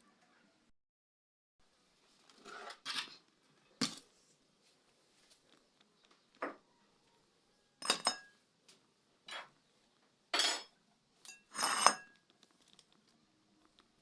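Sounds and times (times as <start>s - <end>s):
metal cookware clinking and scraping: 7.8s - 8.4s, 10.3s - 12.2s.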